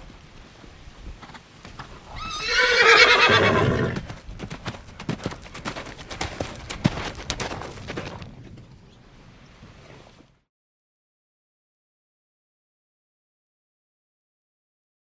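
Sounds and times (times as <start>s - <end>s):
hooves clip-clopping: 0.0s - 10.4s
horse whinnying: 2.0s - 4.1s.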